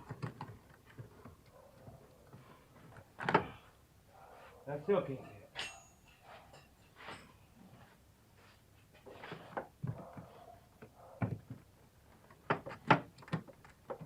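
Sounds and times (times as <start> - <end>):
metallic clunks of hand tools: 5.2 - 7.4.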